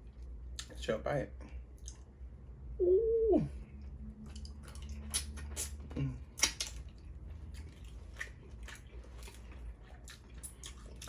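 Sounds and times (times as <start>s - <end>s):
person humming: 2.8s - 3.6s
wet chewing with smacking: 4.1s - 11.0s.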